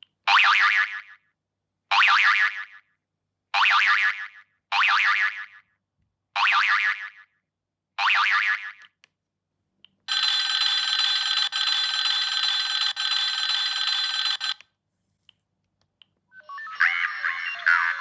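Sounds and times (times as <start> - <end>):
phone ringing: 10.1 - 14.6.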